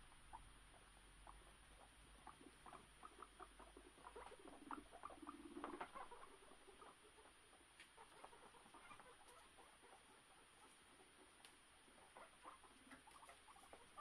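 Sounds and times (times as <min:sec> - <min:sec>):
guinea pig calls: 0:00.0 - 0:14.0
guinea pigs scurrying: 0:00.0 - 0:14.0.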